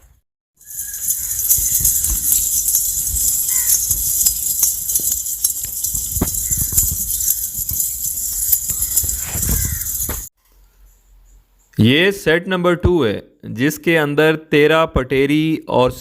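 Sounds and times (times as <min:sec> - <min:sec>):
high-pitched rattling hiss: 0:00.6 - 0:10.3
knocks and shuffling: 0:00.6 - 0:10.3.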